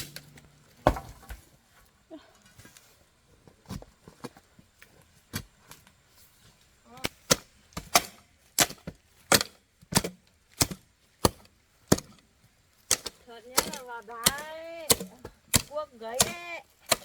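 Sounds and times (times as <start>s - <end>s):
hand tool chopping into wood: 0.0s - 1.4s, 7.0s - 12.2s, 12.9s - 17.0s.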